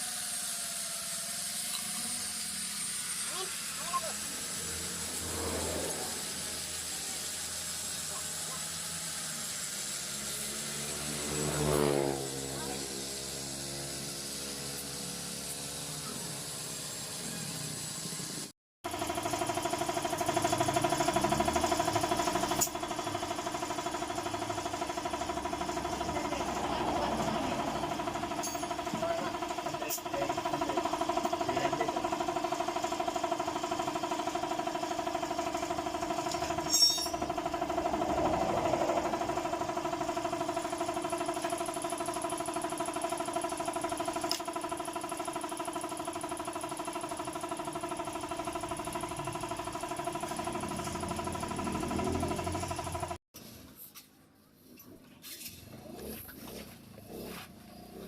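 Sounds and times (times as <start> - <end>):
sharp high-pitched noise: 0.0 - 17.7, 36.5 - 39.0
motor humming steadily: 0.0 - 53.2.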